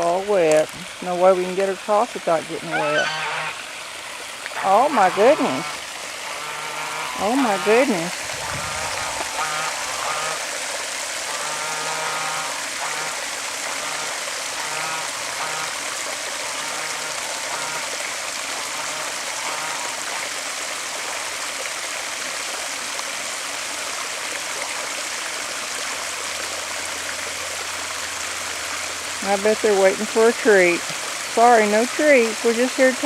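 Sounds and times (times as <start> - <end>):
water rushing over spillway: 0.0 - 33.0
geese honking faintly: 2.6 - 3.7, 4.6 - 10.4.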